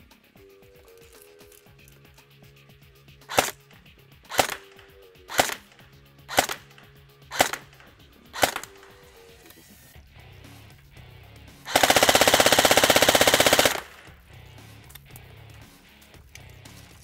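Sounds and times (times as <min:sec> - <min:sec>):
airsoft gun shots: 0:03.3 - 0:03.7, 0:04.3 - 0:09.1, 0:11.7 - 0:14.2.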